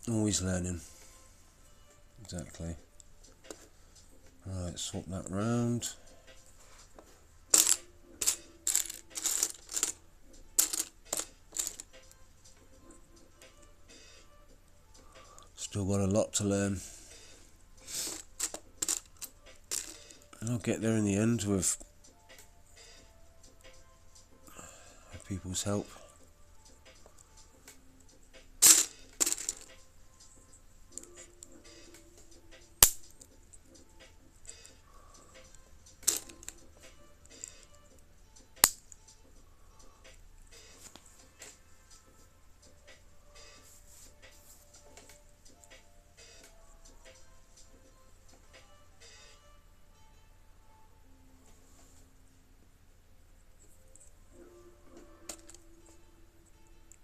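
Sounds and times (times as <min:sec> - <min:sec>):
plastic toy bricks clattering: 0:07.6 - 0:10.0, 0:28.6 - 0:29.7.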